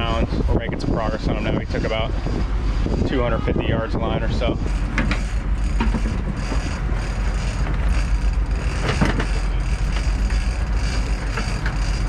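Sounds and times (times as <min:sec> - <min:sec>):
boat engine idling: 0:00.0 - 0:12.0.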